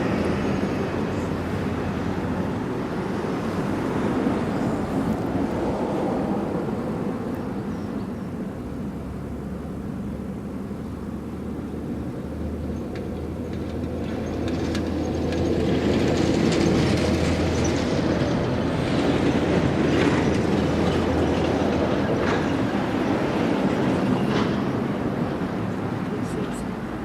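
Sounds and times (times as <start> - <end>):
lorry diesel engines running: 0.0 - 27.0.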